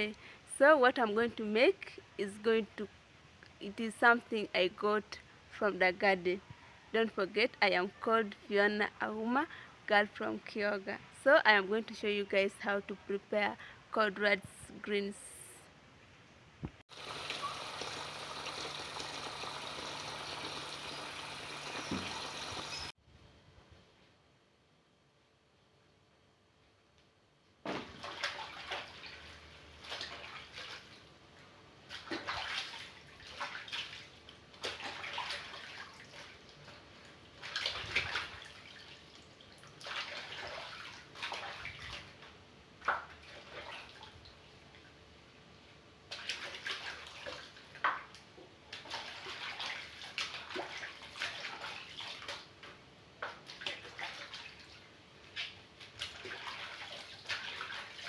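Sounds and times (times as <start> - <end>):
water sloshing in a basin: 27.8 - 44.9, 46.1 - 52.6, 53.2 - 58.0.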